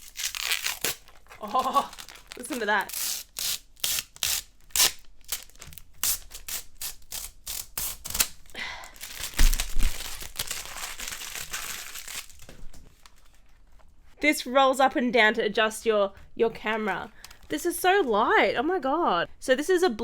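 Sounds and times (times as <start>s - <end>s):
rustling and crinkling: 0.0s - 2.9s, 8.9s - 14.2s.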